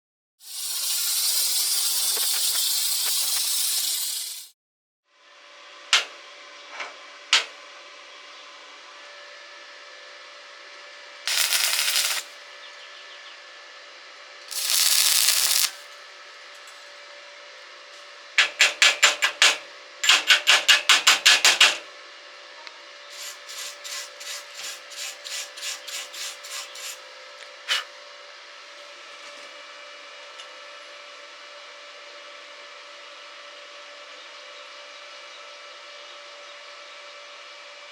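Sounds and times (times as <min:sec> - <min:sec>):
rasp scraping a workpiece: 0:00.4 - 0:04.5, 0:23.1 - 0:27.0.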